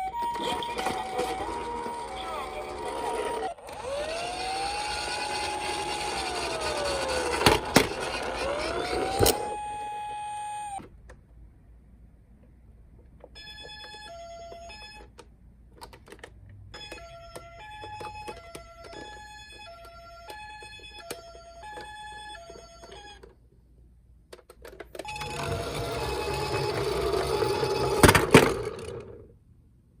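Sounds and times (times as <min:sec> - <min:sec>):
toy ambulance two-tone siren: 0:00.0 - 0:10.9, 0:13.4 - 0:15.1, 0:16.8 - 0:23.4, 0:25.0 - 0:28.1.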